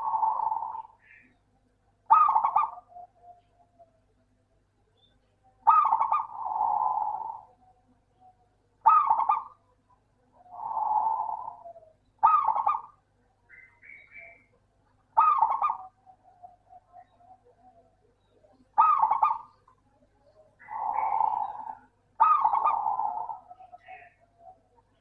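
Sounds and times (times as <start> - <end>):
dove cooing: 0.0 - 1.4, 2.0 - 4.2, 5.6 - 25.0
dove stuttering song: 0.0 - 4.4, 5.0 - 25.0.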